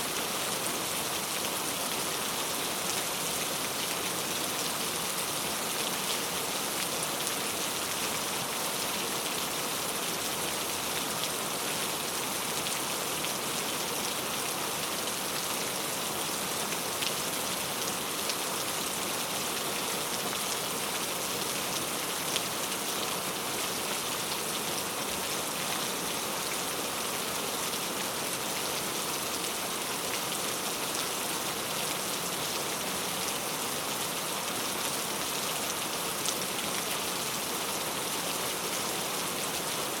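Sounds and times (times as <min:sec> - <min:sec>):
steady rain falling: 0:00.0 - 0:40.0.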